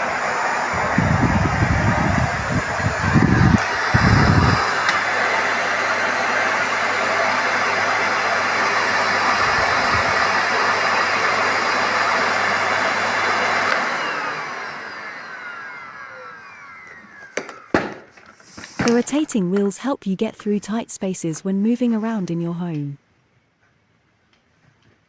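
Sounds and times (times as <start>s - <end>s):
vacuum cleaner running: 0.0s - 19.3s
motor winding down whine: 0.7s - 5.0s, 13.7s - 17.8s.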